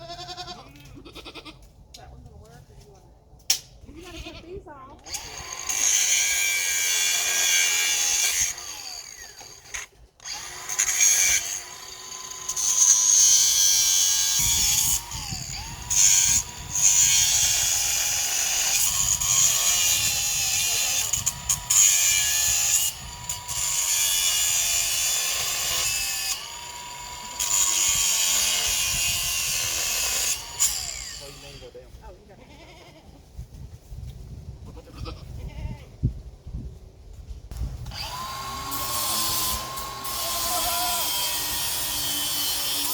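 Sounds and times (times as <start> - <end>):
power drill running: 5.1 - 13.4, 24.6 - 28.6, 29.5 - 31.4, 37.9 - 42.9.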